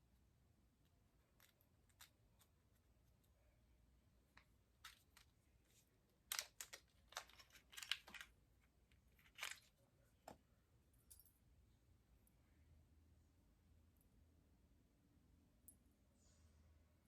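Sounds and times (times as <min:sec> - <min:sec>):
small parts clicking: 0:01.3 - 0:03.4, 0:06.3 - 0:08.3, 0:08.9 - 0:09.8
packaging crinkling: 0:06.3 - 0:08.3, 0:09.1 - 0:09.7.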